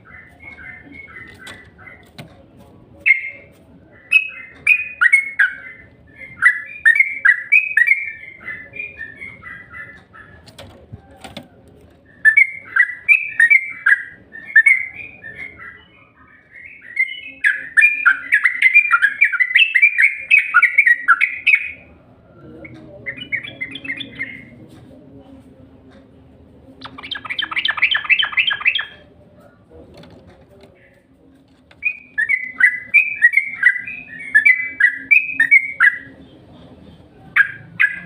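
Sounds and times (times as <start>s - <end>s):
bulbul song: 3.0s - 10.3s, 12.1s - 21.9s, 26.8s - 29.1s, 31.8s - 36.2s.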